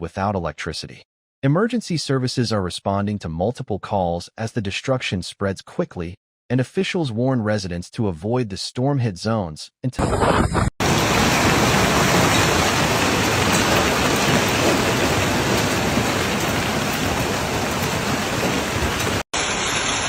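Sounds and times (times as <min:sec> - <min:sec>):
heavy rain on hard surfaces: 0:10.8 - 0:20.0.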